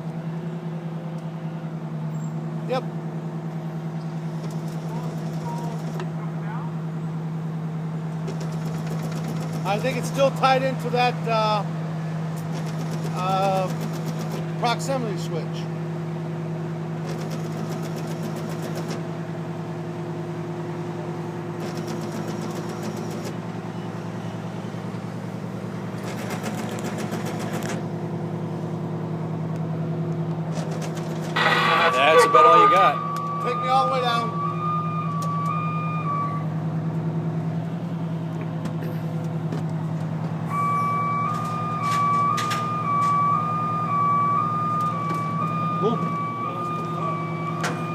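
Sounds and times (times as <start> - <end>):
engine and hydraulics humming: 0.0 - 47.9
high warning tone: 31.4 - 36.7, 40.5 - 47.9.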